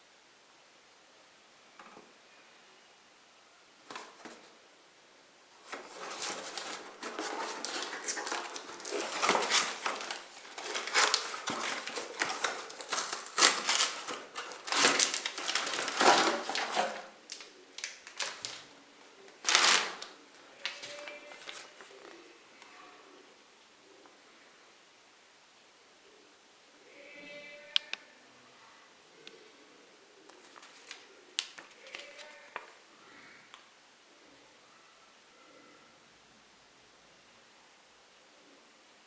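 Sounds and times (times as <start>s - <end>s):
packaging crinkling and rustling: 5.6s - 22.2s, 30.3s - 32.8s.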